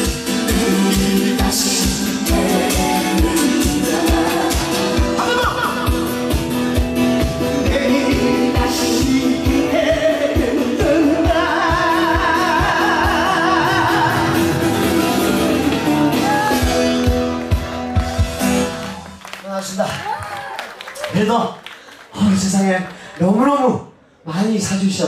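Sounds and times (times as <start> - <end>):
person singing with vibrato: 0.0 - 6.3, 7.4 - 16.2.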